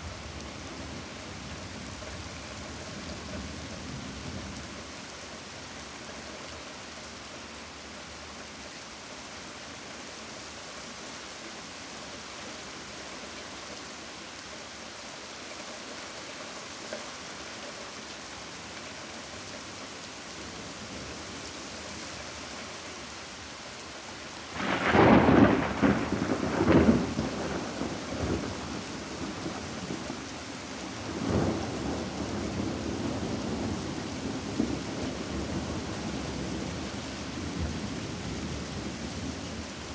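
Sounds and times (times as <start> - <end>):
steady rain falling: 0.0 - 39.9
thunder rumbling: 24.6 - 30.2.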